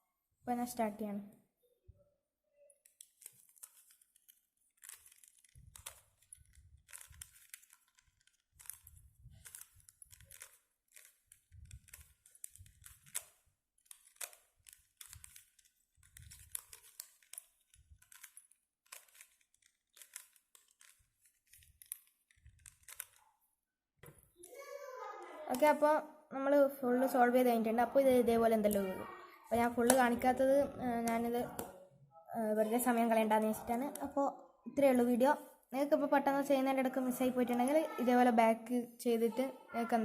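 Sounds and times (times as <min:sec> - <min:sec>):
puzzle cube clicking twists: 0:02.7 - 0:23.4, 0:25.5 - 0:25.8, 0:28.4 - 0:31.8.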